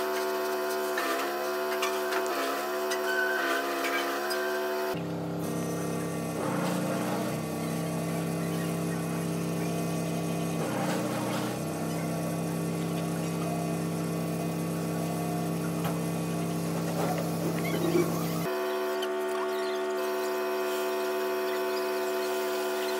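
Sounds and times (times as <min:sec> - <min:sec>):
small electric motor humming: 0:00.0 - 0:22.9.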